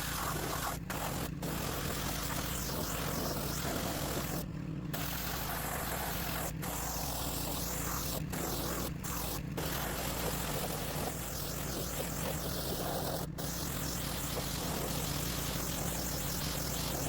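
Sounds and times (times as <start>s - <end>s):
water spray hissing: 0.0s - 4.3s, 5.0s - 17.0s
pressure washer engine hum: 0.0s - 17.0s.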